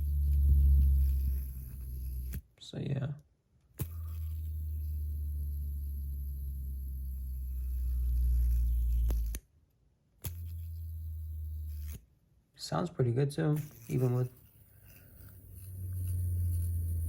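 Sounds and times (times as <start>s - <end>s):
fidget spinner whirring: 0.0s - 2.4s, 3.8s - 9.4s, 10.2s - 12.1s, 13.5s - 17.0s.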